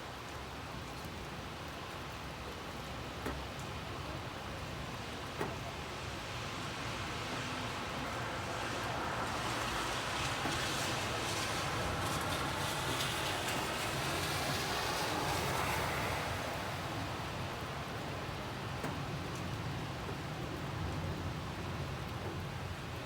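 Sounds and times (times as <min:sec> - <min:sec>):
rain on a street: 0:00.0 - 0:23.0
car tyres hissing on wet road: 0:04.7 - 0:23.0.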